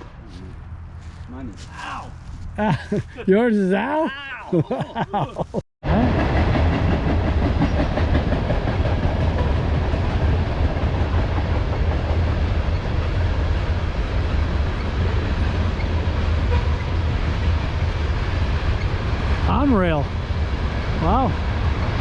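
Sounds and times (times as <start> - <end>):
freight train rumbling past: 5.8 - 22.0.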